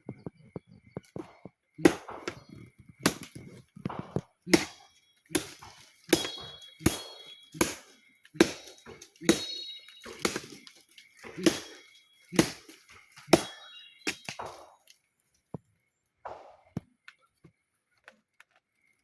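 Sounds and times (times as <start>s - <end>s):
sharp heavy knocks: 1.8s - 14.8s, 16.3s - 16.8s.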